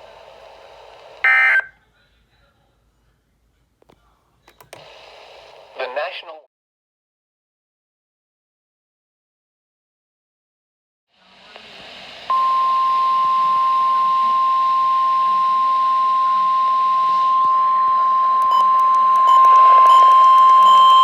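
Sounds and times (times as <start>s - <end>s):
radio hiss: 0.0s - 1.7s, 4.7s - 6.5s, 11.2s - 17.2s
steady high alarm tone: 1.2s - 1.7s, 12.3s - 21.0s.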